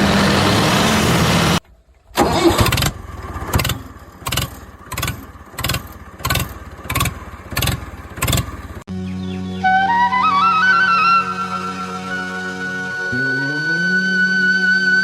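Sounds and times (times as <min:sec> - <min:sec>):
vehicle engine starting and chugging: 0:00.0 - 0:08.9.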